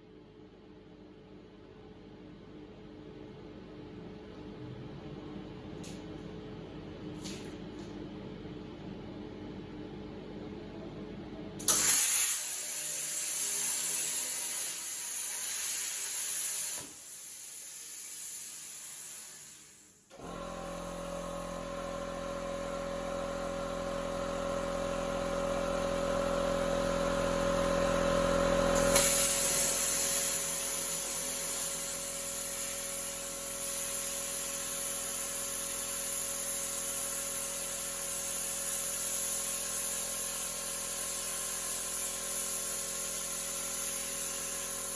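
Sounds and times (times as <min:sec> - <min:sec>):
plasma cutter torch hissing: 0:11.6 - 0:20.1, 0:28.7 - 0:44.9.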